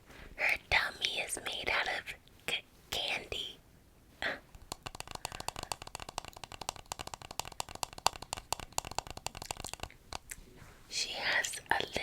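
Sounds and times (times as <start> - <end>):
rapid sharp clicking: 4.6 - 10.3.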